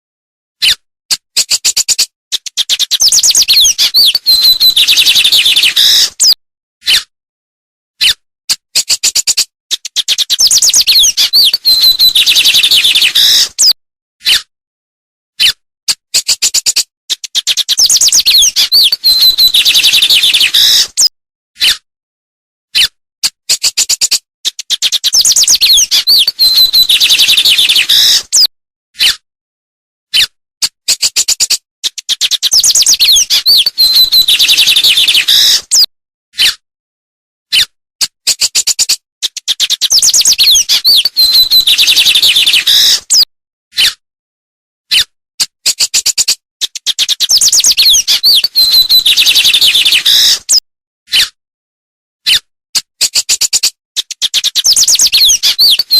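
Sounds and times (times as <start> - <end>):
songbird singing: 2.7 - 6.4, 10.0 - 13.7, 17.4 - 20.9, 24.8 - 28.2, 32.1 - 35.8, 39.5 - 43.2, 47.1 - 50.4.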